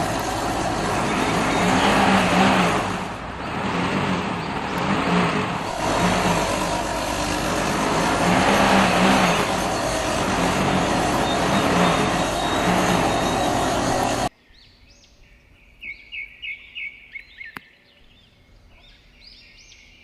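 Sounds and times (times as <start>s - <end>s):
diesel engine revving under load: 0.0s - 14.3s.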